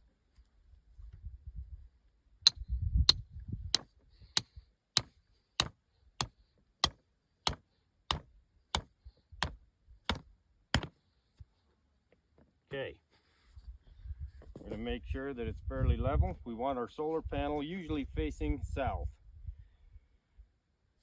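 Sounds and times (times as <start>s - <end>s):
hammer striking stakes: 2.5s - 11.0s.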